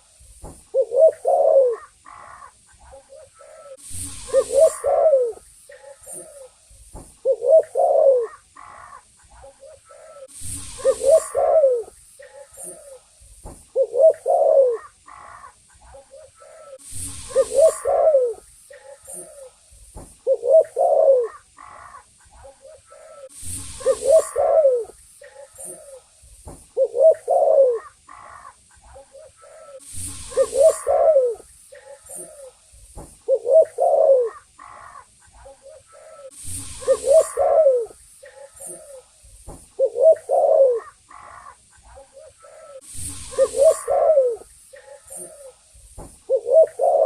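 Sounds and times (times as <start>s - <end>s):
dove cooing: 0.7s - 6.6s, 7.2s - 13.1s, 13.7s - 26.1s, 26.7s - 32.6s, 33.2s - 45.6s, 46.2s - 47.0s
brief hissing rush: 36.3s - 38.0s.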